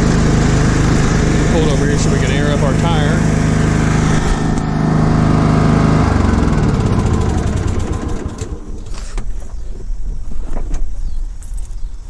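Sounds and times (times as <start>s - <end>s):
riding mower engine idling: 0.0s - 9.4s.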